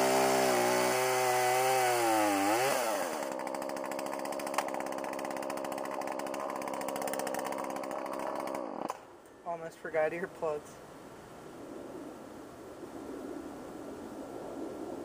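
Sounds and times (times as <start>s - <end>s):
chainsaw engine idling: 0.0s - 9.0s.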